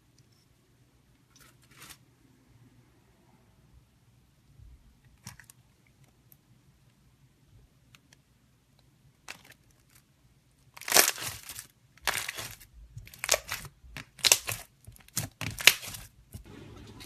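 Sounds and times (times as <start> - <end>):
slime squeezed by hand crunching: 10.8 - 16.1.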